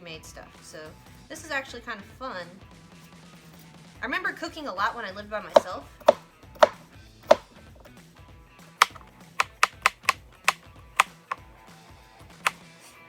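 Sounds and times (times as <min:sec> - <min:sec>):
faint background music: 0:00.0 - 0:07.9
knife chopping on cutting board: 0:05.6 - 0:07.4, 0:08.8 - 0:10.2.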